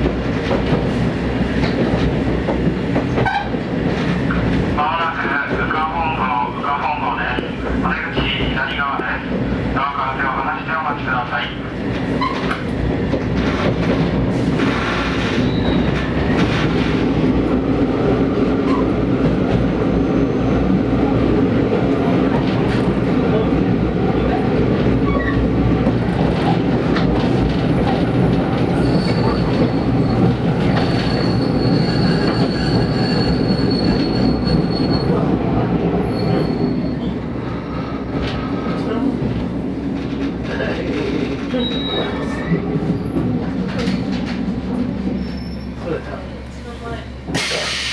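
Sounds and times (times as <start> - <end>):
train wheels rumbling: 0.0 - 47.9
high wheel squeal: 15.3 - 16.0, 28.7 - 35.2, 36.0 - 37.2, 45.2 - 45.9.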